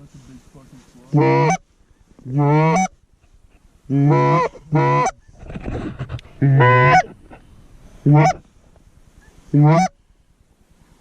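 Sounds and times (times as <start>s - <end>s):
low rustling shuffle: 0.0s - 3.9s
goose call honks: 1.1s - 1.6s, 2.3s - 2.9s, 3.9s - 5.2s, 6.4s - 7.2s, 8.0s - 8.4s, 9.5s - 10.0s.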